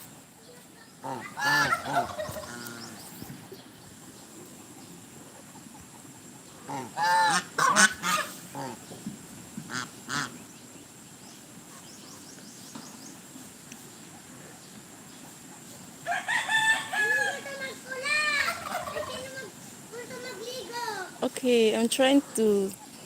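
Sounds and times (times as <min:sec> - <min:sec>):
geese honking: 0:01.0 - 0:03.1, 0:06.6 - 0:08.8, 0:09.7 - 0:10.4, 0:16.1 - 0:19.4.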